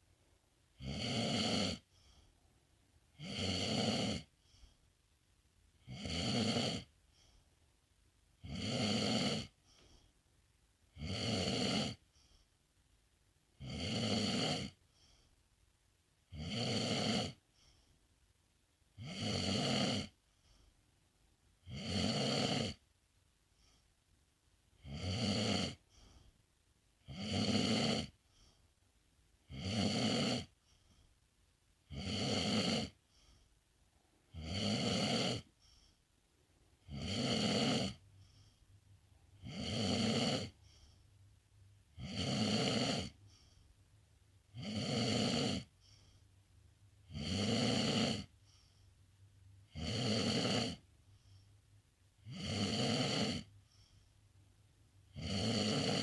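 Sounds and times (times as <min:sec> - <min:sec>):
pet snoring: 0:00.8 - 0:02.2, 0:03.1 - 0:04.8, 0:05.8 - 0:07.3, 0:08.4 - 0:10.0, 0:10.9 - 0:12.4, 0:13.6 - 0:15.2, 0:16.3 - 0:17.8, 0:19.0 - 0:20.2, 0:21.6 - 0:22.8, 0:24.8 - 0:26.3, 0:27.0 - 0:28.6, 0:29.4 - 0:30.8, 0:31.8 - 0:33.4, 0:34.3 - 0:35.9, 0:36.8 - 0:38.5, 0:39.4 - 0:40.9, 0:41.9 - 0:43.5, 0:44.5 - 0:46.1, 0:47.0 - 0:48.7, 0:49.6 - 0:50.9, 0:52.2 - 0:53.9, 0:55.1 - 0:56.0.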